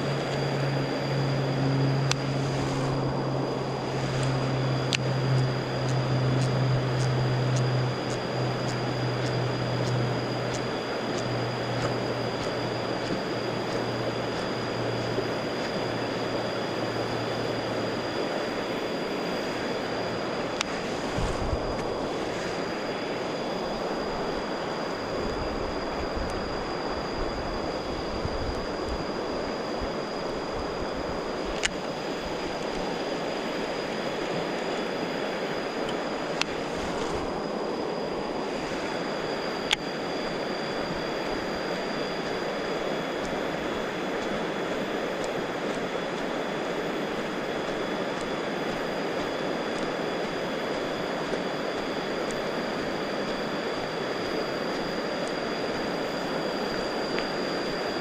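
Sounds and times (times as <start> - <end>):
thin high whine: 0.0 - 58.0.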